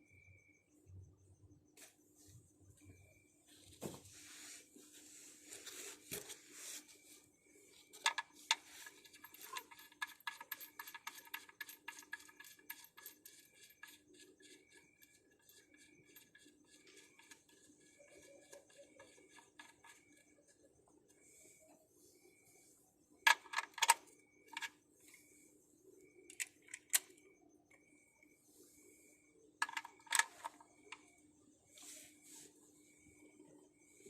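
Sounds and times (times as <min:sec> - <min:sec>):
metal tools clinking: 0:08.0 - 0:13.4.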